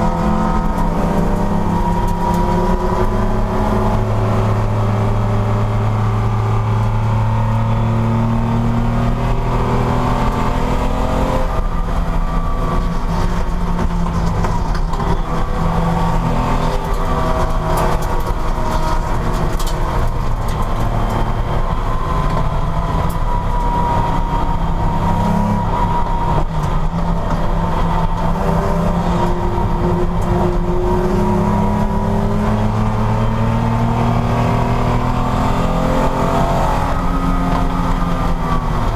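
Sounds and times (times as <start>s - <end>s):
race car engine accelerating: 0.0s - 38.9s.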